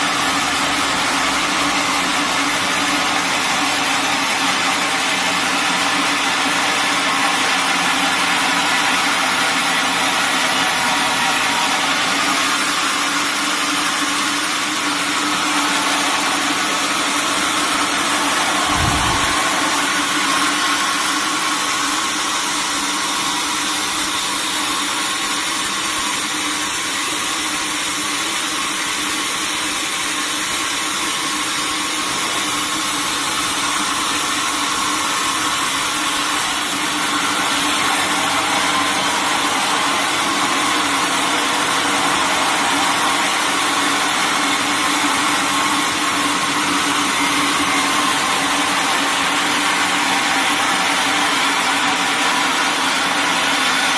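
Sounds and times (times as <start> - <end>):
sawmill machinery humming: 0.0 - 53.9
low thud: 18.6 - 19.6.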